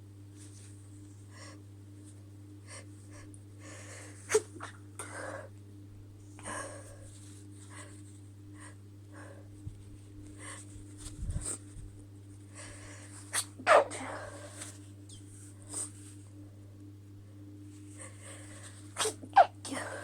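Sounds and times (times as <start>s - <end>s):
short sharp sneeze burst: 13.3s - 14.0s, 19.0s - 19.6s.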